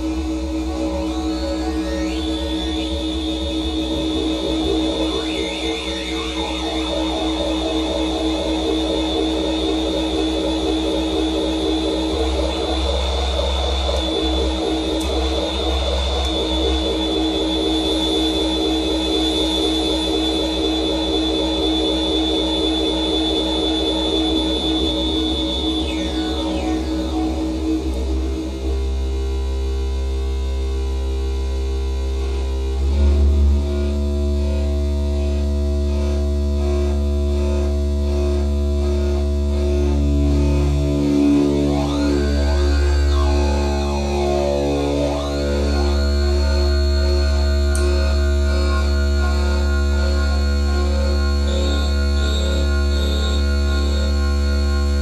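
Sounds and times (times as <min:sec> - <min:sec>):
analog synthesizer drone: 0:00.0 - 0:55.0.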